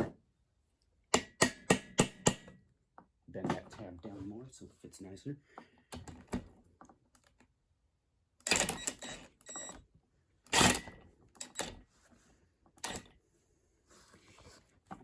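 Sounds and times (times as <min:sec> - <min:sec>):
hammer tapping on screwdriver: 0:01.2 - 0:02.5.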